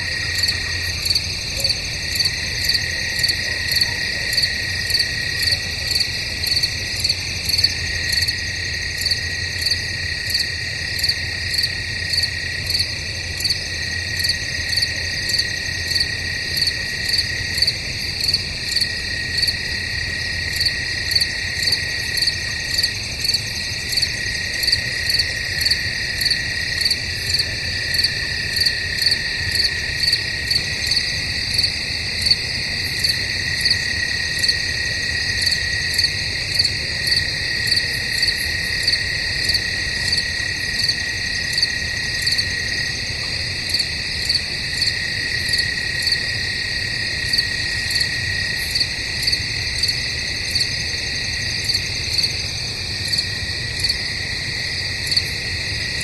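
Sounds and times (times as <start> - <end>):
crickets chirping: 0.0 - 56.0.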